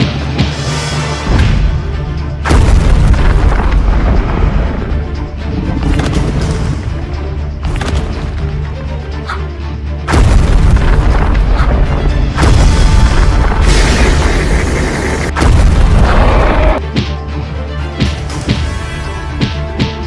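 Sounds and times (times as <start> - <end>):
background music: 0.0 - 20.0
booming explosion sound effects: 2.5 - 4.8, 10.1 - 11.6, 12.3 - 16.8.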